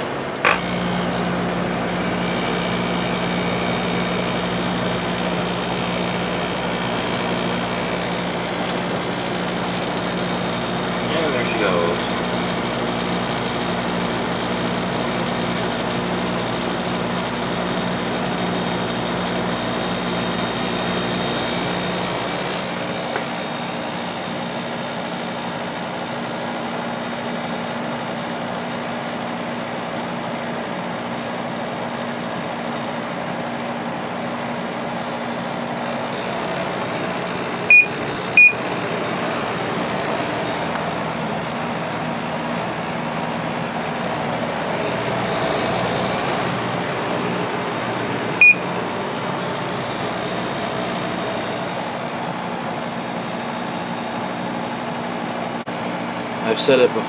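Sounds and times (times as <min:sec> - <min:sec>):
low compressor hum: 0:00.0 - 0:23.1, 0:36.0 - 0:52.9
air conditioner fan blowing: 0:00.0 - 0:57.0
short high beeps: 0:37.7 - 0:38.6, 0:48.4 - 0:48.6.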